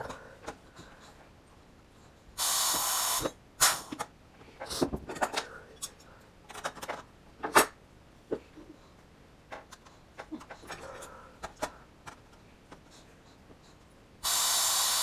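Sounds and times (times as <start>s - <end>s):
compressed air hiss: 2.4s - 3.9s, 14.2s - 15.0s.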